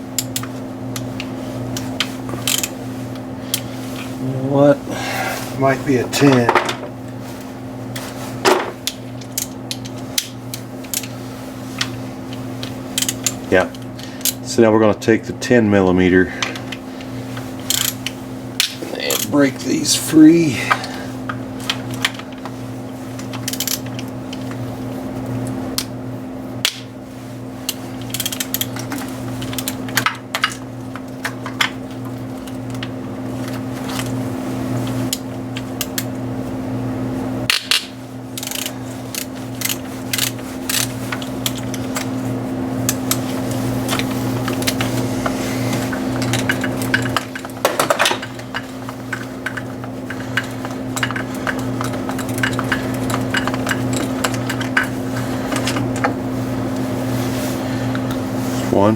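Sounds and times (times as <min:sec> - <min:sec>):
steady hum: 0:00.0 - 0:58.9.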